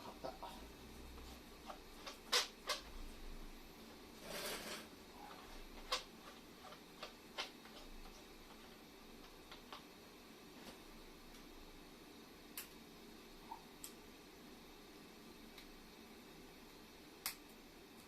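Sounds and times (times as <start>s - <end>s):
metal scrape: 4.2s - 4.9s.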